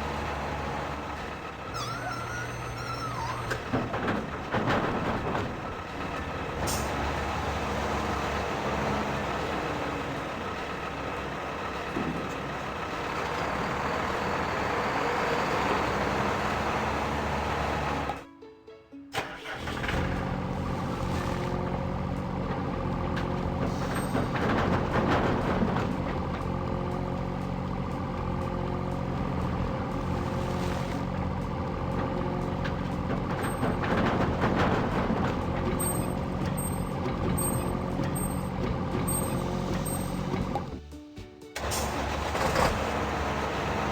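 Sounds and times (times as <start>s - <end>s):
vehicle engine running: 19.7s - 41.0s.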